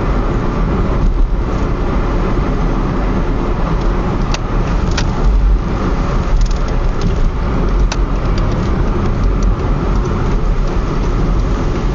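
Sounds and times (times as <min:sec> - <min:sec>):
road and engine rumble: 0:00.0 - 0:11.9.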